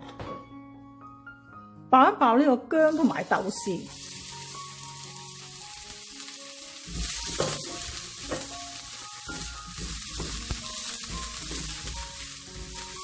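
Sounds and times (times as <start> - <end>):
hot oil sizzling in a wok: 2.8 - 13.0
stirring knocks: 6.9 - 8.6, 9.3 - 13.0.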